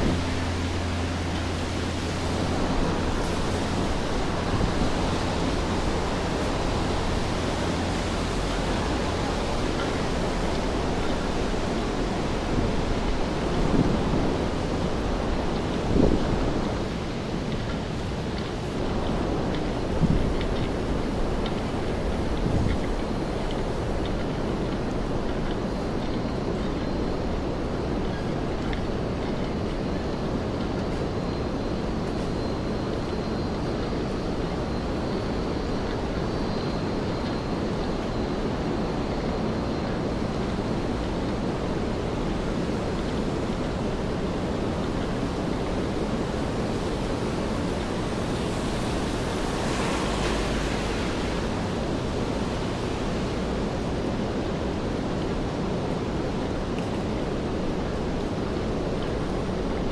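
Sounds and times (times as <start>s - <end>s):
rain on wet pavement: 33.0s - 55.4s.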